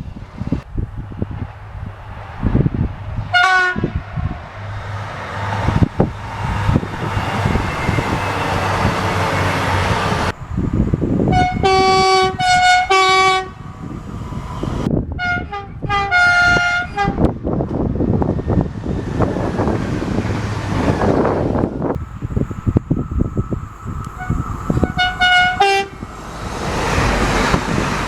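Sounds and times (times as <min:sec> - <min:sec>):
passing train rumbling: 0:00.0 - 0:28.0
train horn blasts: 0:03.3 - 0:03.9, 0:11.3 - 0:13.6, 0:15.2 - 0:17.3, 0:24.0 - 0:26.0.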